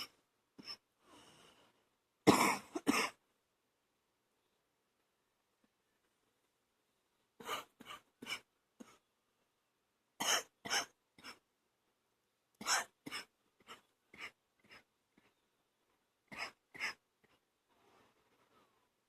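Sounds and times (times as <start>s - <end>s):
woman coughing: 2.3s - 3.2s, 10.2s - 11.4s.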